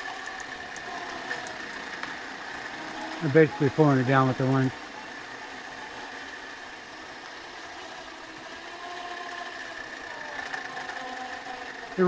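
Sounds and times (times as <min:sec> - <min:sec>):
electric winch whining under load: 0:00.0 - 0:12.0.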